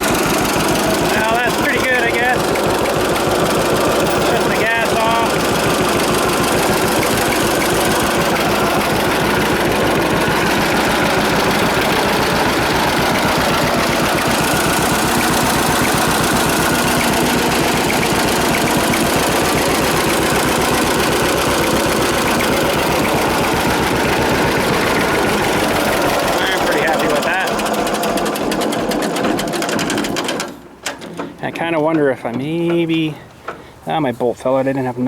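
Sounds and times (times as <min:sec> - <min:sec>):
two-cylinder engine running: 0:00.0 - 0:33.6.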